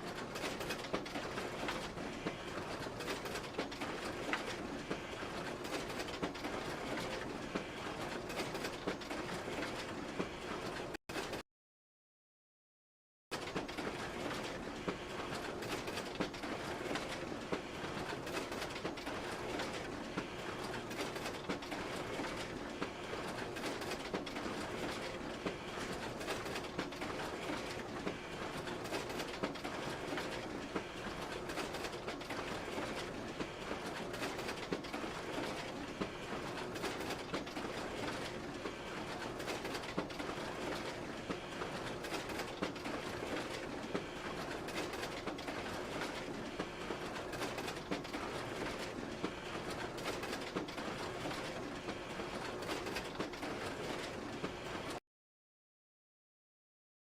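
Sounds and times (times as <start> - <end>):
photocopier whirring: 0.0 - 11.3, 13.4 - 55.0.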